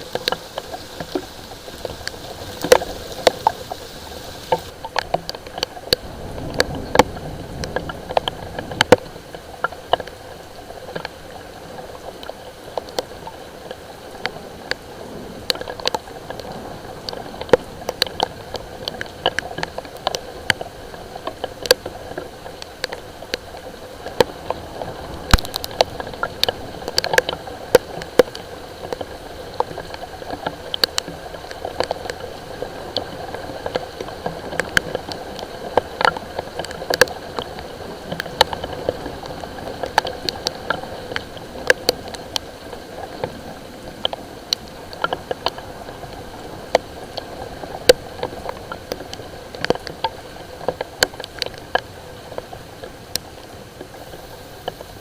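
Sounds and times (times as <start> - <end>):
light rain hiss: 0.0 - 55.0
raindrops ticking on hard surface: 0.0 - 55.0.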